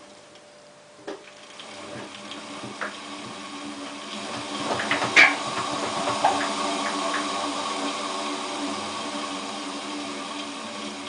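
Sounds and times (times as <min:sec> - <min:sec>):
washing machine motor hum: 0:00.0 - 0:11.0
drum clicks and knocks: 0:04.2 - 0:07.4.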